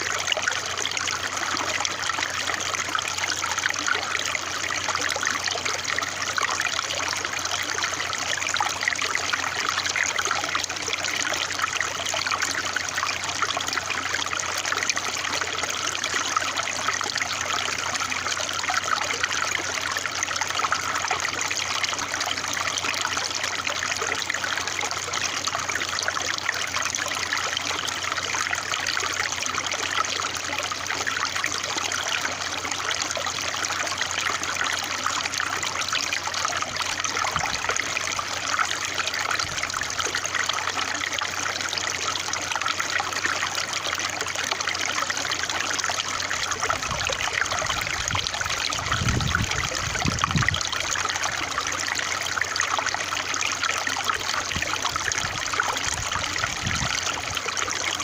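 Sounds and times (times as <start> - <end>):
water trickling: 0.0 - 58.0.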